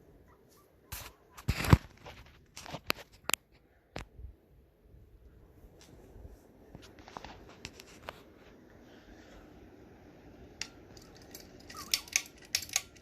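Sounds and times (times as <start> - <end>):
ceiling fan whirring: 0.0 - 13.0
sharp metallic clicks and rattles: 10.6 - 13.0.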